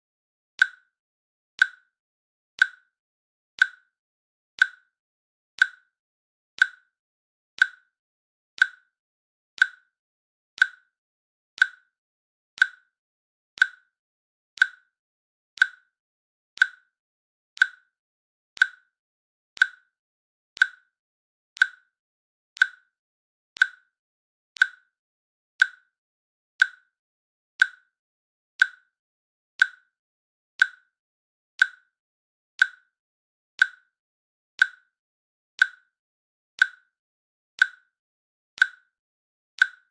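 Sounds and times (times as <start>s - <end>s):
timer clicks ticking: 0.6s - 0.9s, 1.6s - 1.9s, 2.6s - 2.9s, 3.6s - 3.9s, 4.6s - 4.9s, 5.6s - 5.9s, 6.6s - 6.9s, 7.6s - 8.0s, 8.6s - 9.0s, 9.6s - 9.9s, 10.6s - 11.0s, 11.6s - 12.0s, 12.6s - 13.0s, 13.6s - 14.0s, 14.6s - 15.0s, 15.6s - 16.0s, 16.6s - 17.0s, 17.6s - 17.9s, 18.6s - 19.0s, 19.6s - 20.0s, 20.6s - 21.0s, 21.6s - 22.0s, 22.6s - 23.0s, 23.6s - 24.0s, 24.6s - 25.0s, 25.6s - 26.0s, 26.6s - 27.0s, 27.6s - 28.0s, 28.6s - 29.0s, 29.6s - 30.0s, 30.6s - 31.0s, 31.6s - 32.0s, 32.6s - 33.0s, 33.6s - 33.9s, 34.6s - 34.9s, 35.6s - 36.0s, 36.6s - 36.9s, 37.6s - 37.9s, 38.6s - 38.9s, 39.6s - 39.9s.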